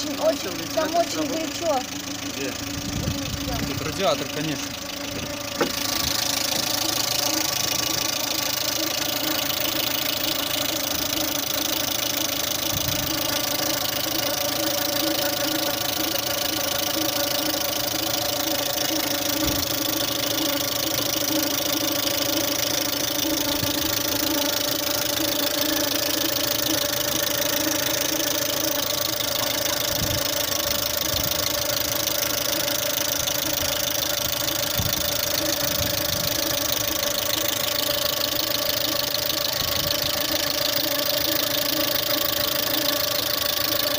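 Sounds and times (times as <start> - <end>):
engine idling: 0.0 - 43.9
valve lifter knock: 5.1 - 5.9.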